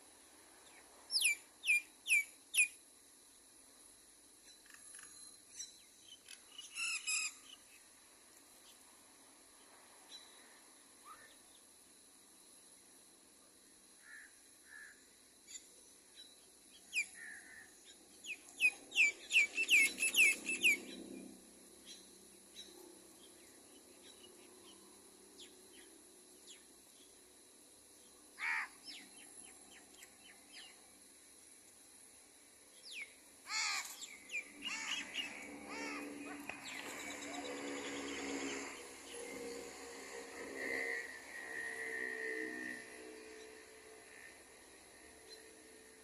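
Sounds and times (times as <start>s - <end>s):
birds chirping: 18.1s - 21.1s, 32.8s - 39.3s.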